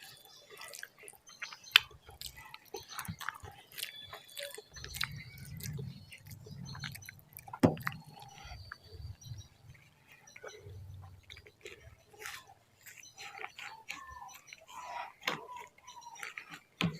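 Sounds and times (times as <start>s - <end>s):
close chewing with mouth clicks: 0.0s - 16.9s.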